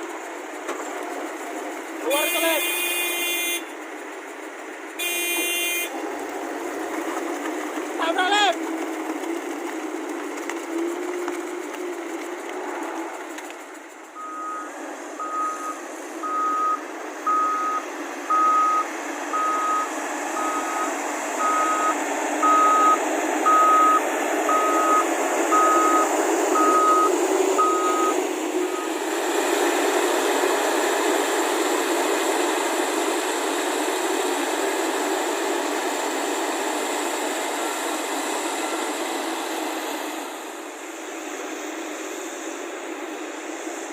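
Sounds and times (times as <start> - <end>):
heavy machine engine running: 0.0 - 43.9
reversing alarm beeping: 14.2 - 29.1.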